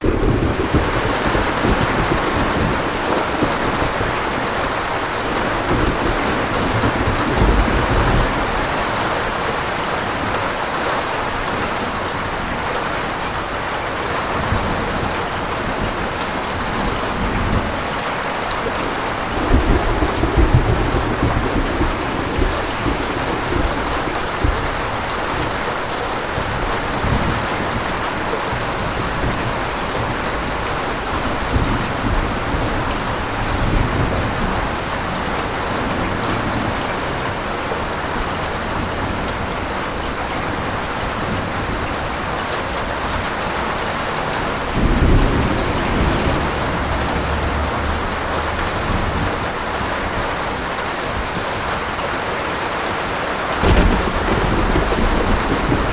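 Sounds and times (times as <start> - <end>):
rolling thunder: 0.0 - 52.0, 53.4 - 55.9
heavy rain hissing: 0.0 - 55.9.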